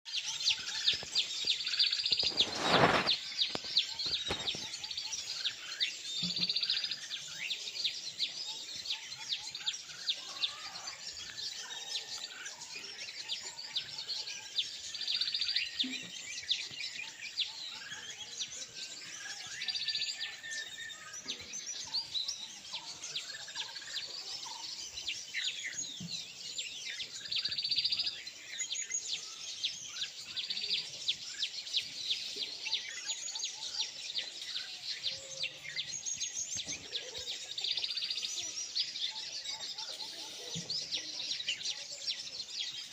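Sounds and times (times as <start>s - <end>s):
small birds chirping: 0.0s - 42.9s.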